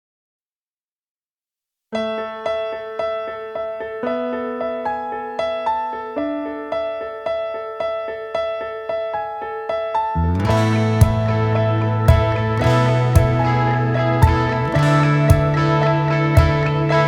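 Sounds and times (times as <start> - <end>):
piano notes: 2.0 - 17.0
accompaniment with heavy bass: 10.2 - 17.0.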